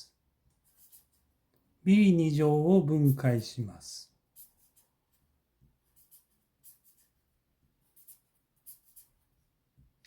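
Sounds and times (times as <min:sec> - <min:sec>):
pen scratching while writing: 0:00.5 - 0:01.3, 0:04.3 - 0:09.3.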